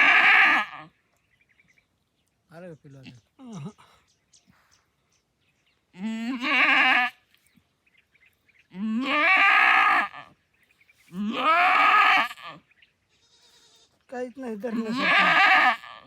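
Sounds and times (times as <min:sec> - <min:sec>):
goat bleating: 0:00.0 - 0:00.9, 0:06.0 - 0:07.2, 0:08.7 - 0:10.3, 0:11.1 - 0:16.0.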